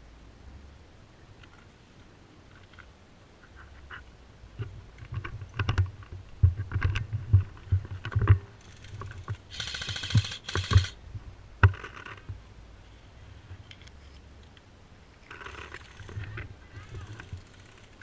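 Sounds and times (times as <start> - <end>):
gear knocks and clicks: 4.6 - 11.0, 15.2 - 18.0
bb gun firing bursts: 9.5 - 11.0.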